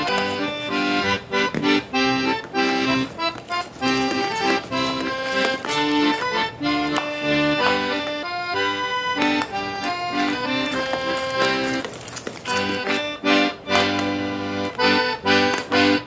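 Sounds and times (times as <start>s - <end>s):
instrumental background music: 0.0s - 16.0s.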